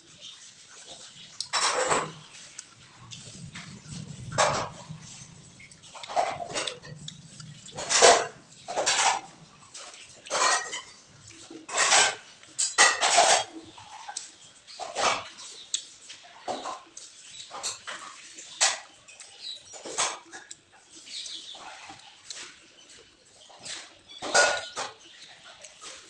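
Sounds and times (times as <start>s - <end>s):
metal spoon scraping a pot: 1.4s - 15.6s.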